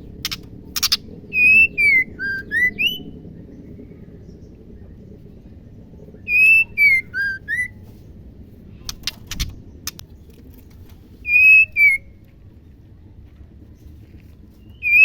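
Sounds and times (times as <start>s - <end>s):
bird whistling clear notes: 6.3s - 7.7s, 11.2s - 12.1s
sharp clicks: 8.9s - 11.0s.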